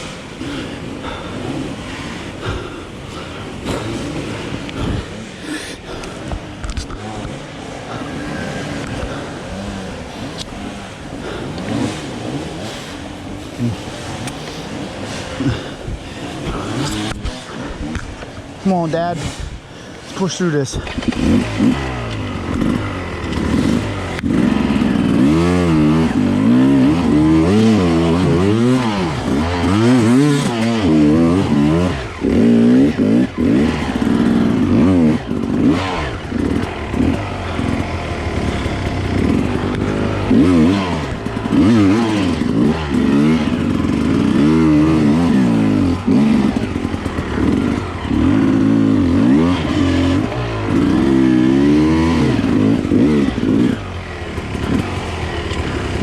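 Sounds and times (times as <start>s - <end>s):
dirt bike engine revving: 0.0s - 56.0s
clatter: 13.6s - 18.4s, 20.0s - 56.0s.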